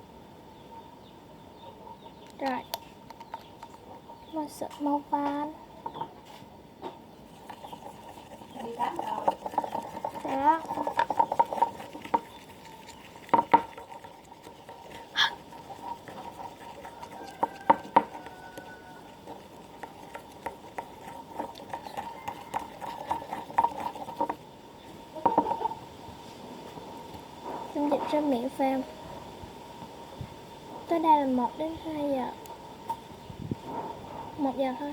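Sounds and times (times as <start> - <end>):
brush stirring glue: 7.2 - 28.6
stirrer tapping container: 7.3 - 24.4, 25.2 - 25.8.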